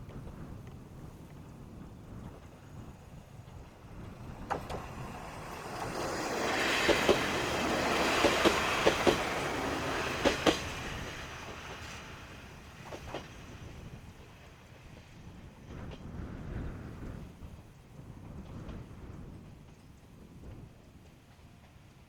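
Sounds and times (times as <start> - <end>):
railcar passing: 0.0 - 22.0
wheels clacking over rail joints: 2.2 - 14.6.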